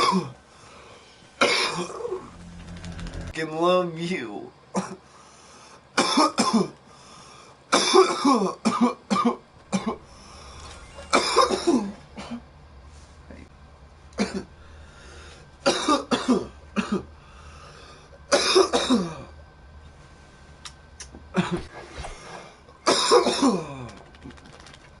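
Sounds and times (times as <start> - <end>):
boy coughing: 0.0 - 0.4, 1.4 - 2.1, 6.0 - 6.8, 7.7 - 10.0, 11.1 - 12.4, 14.2 - 14.5, 15.7 - 17.1, 18.3 - 19.3, 21.3 - 21.7, 22.8 - 23.8.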